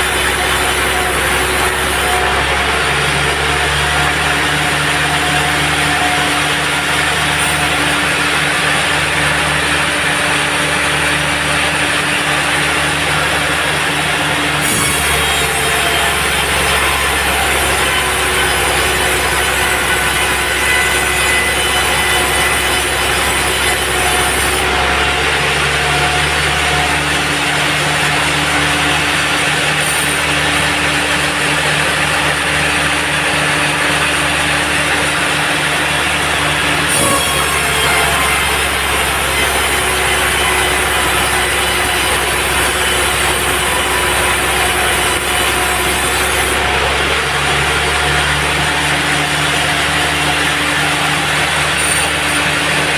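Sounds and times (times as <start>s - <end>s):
engine drone: 0.0s - 52.9s
saw blade rushing: 12.0s - 25.3s, 36.3s - 52.9s.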